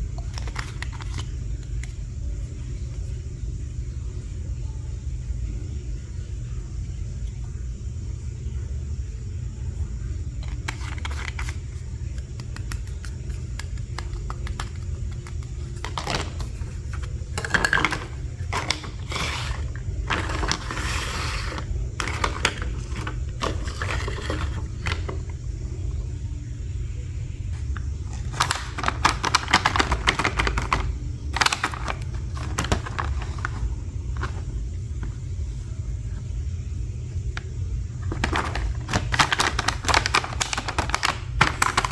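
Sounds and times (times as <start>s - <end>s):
plastic toy pieces being handled: 0.2s - 2.0s, 10.4s - 25.3s, 28.0s - 34.5s, 38.0s - 41.9s
steady low rumble: 14.6s - 39.1s.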